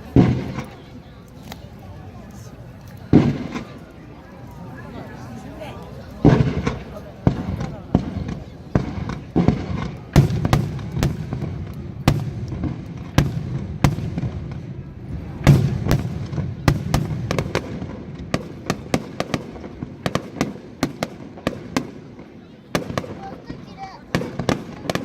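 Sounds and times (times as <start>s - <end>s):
fireworks bangs: 0.0s - 1.1s, 3.1s - 4.0s, 6.2s - 25.0s
fireworks crackling pops: 0.0s - 4.1s, 5.8s - 25.0s.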